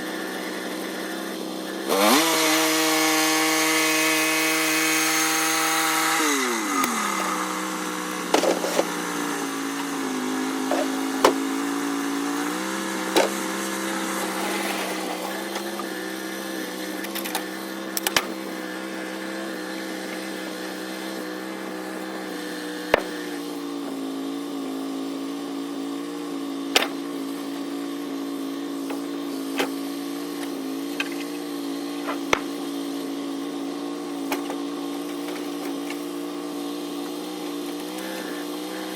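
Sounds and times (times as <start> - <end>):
sawmill engine idling: 0.0 - 38.9
sharp knocks and clanks: 22.9 - 23.2.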